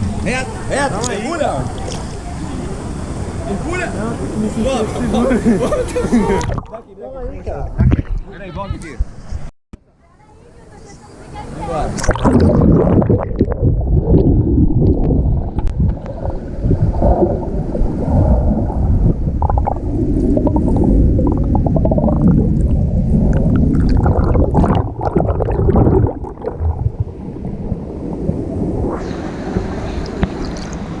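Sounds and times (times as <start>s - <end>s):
water churning underwater: 0.0s - 6.8s, 11.9s - 31.0s
bubbles gurgling: 12.0s - 30.8s.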